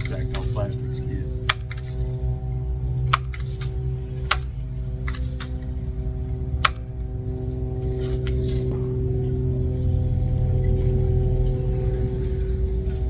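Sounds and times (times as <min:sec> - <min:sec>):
low motor hum: 0:00.0 - 0:13.0
sharp clicks: 0:01.4 - 0:02.0, 0:03.1 - 0:05.6, 0:06.6 - 0:07.0.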